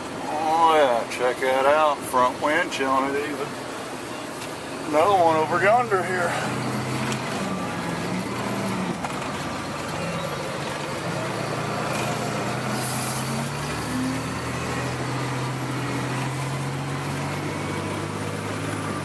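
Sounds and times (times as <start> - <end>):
vehicle engine and road noise: 0.0 - 19.0
brief hiss: 12.7 - 13.3.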